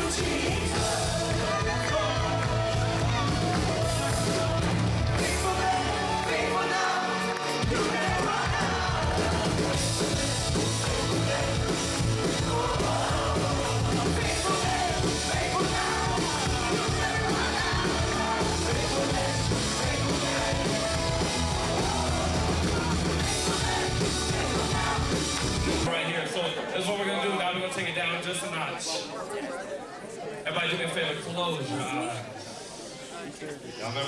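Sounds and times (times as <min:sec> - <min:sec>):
person singing: 0:00.0 - 0:25.8
rock band playing: 0:00.0 - 0:25.9.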